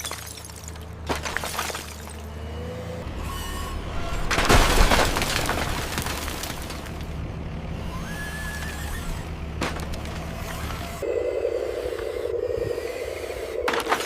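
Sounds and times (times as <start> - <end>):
low hum: 5.8 - 14.0.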